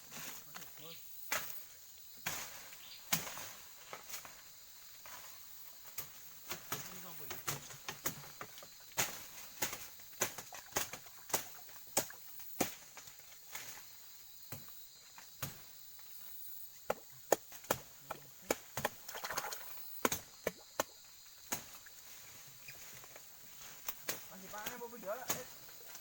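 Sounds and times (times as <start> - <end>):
machete chopping: 6.5 - 13.1, 16.8 - 21.8.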